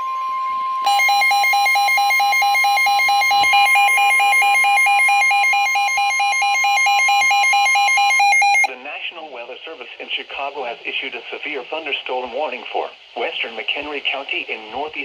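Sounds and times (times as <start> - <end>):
rapidly pulsing alarm tone: 0.0 - 8.7
steady high electronic tone: 0.0 - 8.7.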